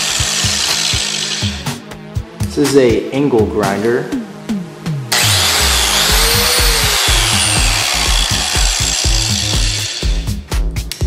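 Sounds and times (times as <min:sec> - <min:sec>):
angle grinder running: 0:00.0 - 0:01.8, 0:05.1 - 0:10.3.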